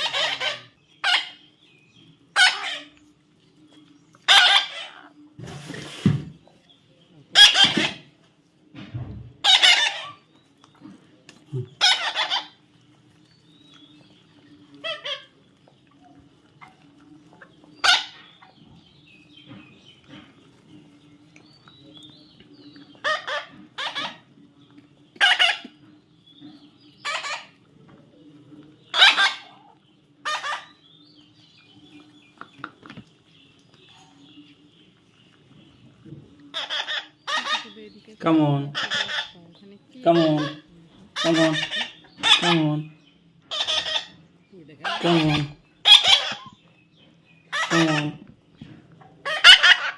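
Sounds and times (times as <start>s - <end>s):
parrot squawking: 0.0s - 1.4s, 2.3s - 2.9s, 4.3s - 5.1s, 7.3s - 8.1s, 9.4s - 10.3s, 11.7s - 12.6s, 14.8s - 15.4s, 17.8s - 18.4s, 23.0s - 24.3s, 25.2s - 25.8s, 27.0s - 27.5s, 28.9s - 29.6s, 30.2s - 30.8s, 36.5s - 37.8s, 38.6s - 39.4s, 40.0s - 42.9s, 43.5s - 44.2s, 44.8s - 46.6s, 47.5s - 48.3s, 49.2s - 49.9s.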